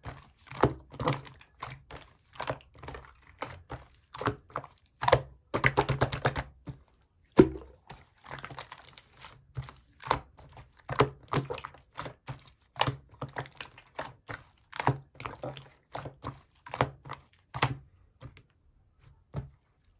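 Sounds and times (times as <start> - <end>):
hands kneading slime: 0.0 - 19.9.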